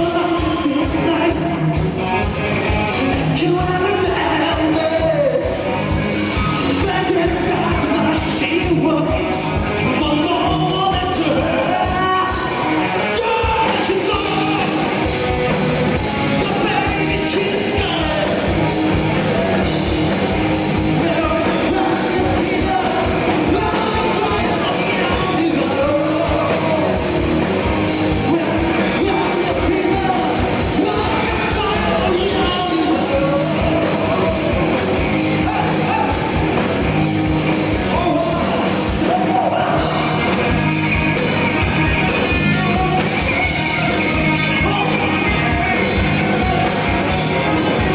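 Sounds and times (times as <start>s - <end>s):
rock band playing live: 0.0s - 47.9s
person singing: 6.3s - 15.0s, 20.9s - 36.8s, 37.7s - 40.7s, 41.6s - 47.9s.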